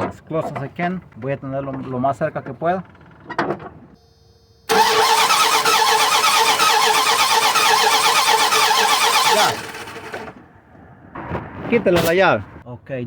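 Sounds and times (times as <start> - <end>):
engine cranking on starter motor: 4.7 - 10.4.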